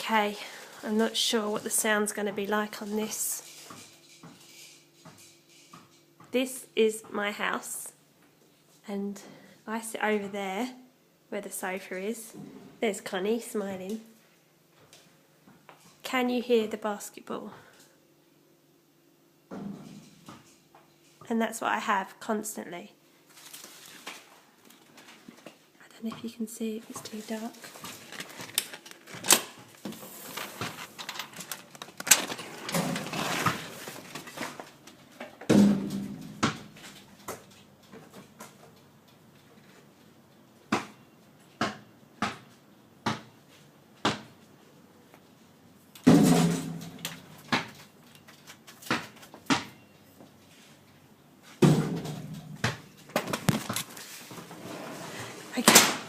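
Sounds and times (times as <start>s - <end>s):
basketball bouncing on hard ground: 41.6s - 43.3s, 51.6s - 52.8s.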